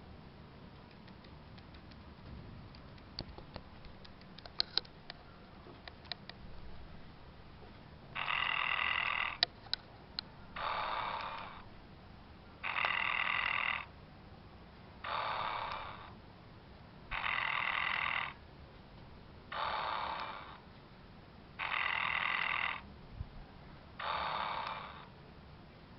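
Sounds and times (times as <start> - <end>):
toy electronic snoring: 8.2 - 9.4, 10.6 - 11.6, 12.6 - 13.9, 15.0 - 16.2, 17.1 - 18.4, 19.5 - 20.6, 21.6 - 22.9, 24.0 - 25.1.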